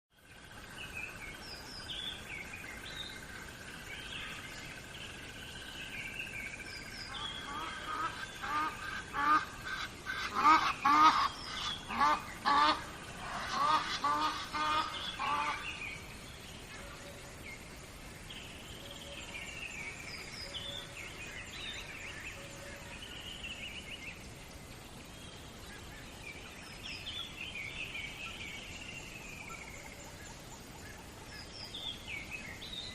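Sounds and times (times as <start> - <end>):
small birds chirping: 0.2 - 32.9
flowing river water: 0.4 - 32.9.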